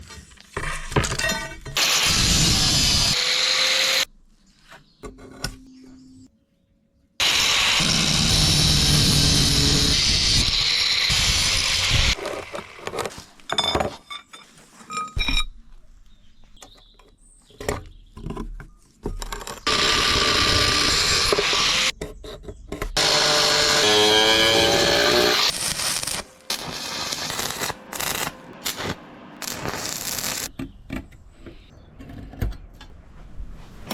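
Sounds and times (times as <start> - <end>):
angle grinder on steel: 1.8 - 4.1, 7.2 - 12.2, 19.6 - 21.9, 23.0 - 30.5
welder buzzing: 1.8 - 4.1, 7.2 - 12.2, 19.6 - 21.9, 23.0 - 30.5.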